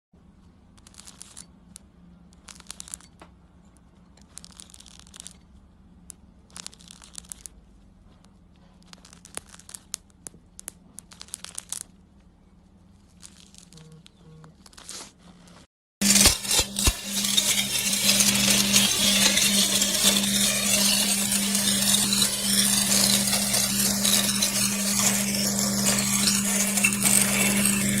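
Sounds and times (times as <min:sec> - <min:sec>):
crackly tearing: 0:06.5 - 0:07.6, 0:08.8 - 0:12.0, 0:13.0 - 0:13.9.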